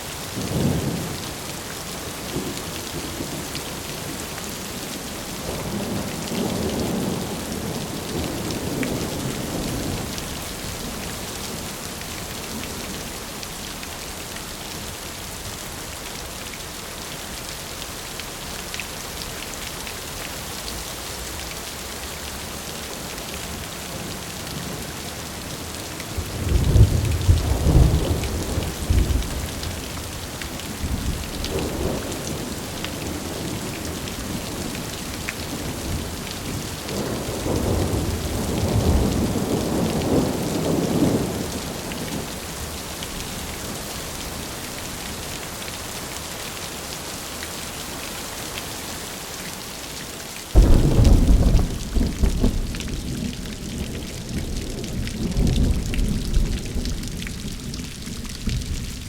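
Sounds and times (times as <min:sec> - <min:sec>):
rain hiss: 0:00.0 - 0:59.0
loud thunderclap: 0:50.6 - 0:59.0
thunder rolling: 0:50.6 - 0:59.0.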